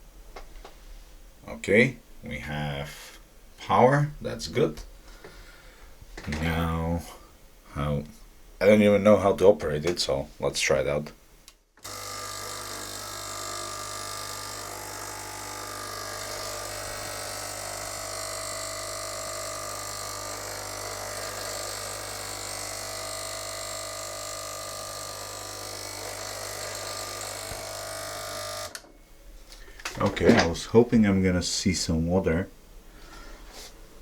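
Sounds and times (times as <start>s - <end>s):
water pump buzzing: 11.8s - 28.8s.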